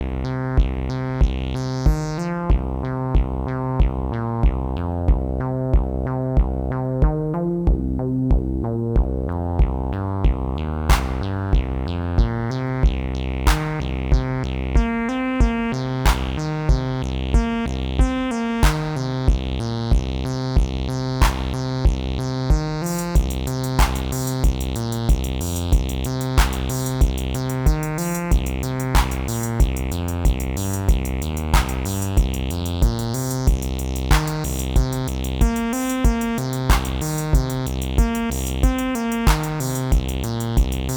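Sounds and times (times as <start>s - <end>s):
electronic kick drum: 0.0s - 40.9s
snare-like hits: 10.9s - 11.4s, 13.5s - 13.8s, 16.1s - 16.5s, 18.6s - 19.0s, 21.2s - 21.6s, 23.8s - 24.4s, 26.4s - 26.9s, 29.0s - 29.5s, 31.5s - 32.2s, 34.1s - 34.6s, 35.8s - 37.4s, 39.2s - 39.9s
fast hi-hat pattern: 12.2s - 40.9s.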